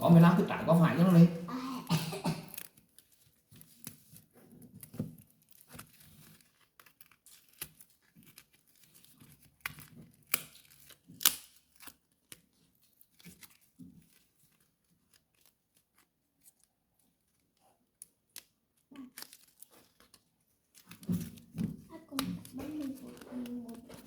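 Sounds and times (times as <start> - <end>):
packaging torn and crinkled: 5.2 - 16.6, 18.3 - 24.0.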